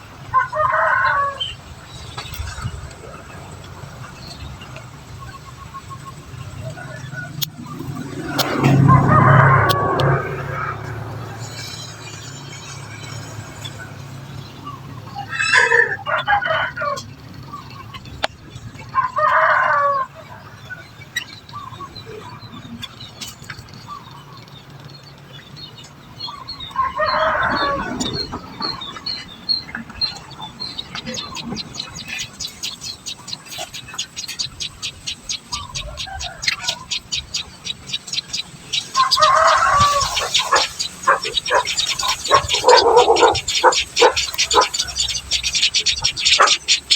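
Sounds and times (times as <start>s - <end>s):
chickens calling: 0.0s - 24.8s, 25.7s - 46.9s
rooster crowing: 0.3s - 1.5s, 8.2s - 10.9s, 15.3s - 17.0s, 19.0s - 20.2s, 26.7s - 28.4s, 35.8s - 37.0s, 38.9s - 44.8s
nestlings peeping: 0.4s - 46.9s
wavering lower bird call: 30.4s - 46.9s.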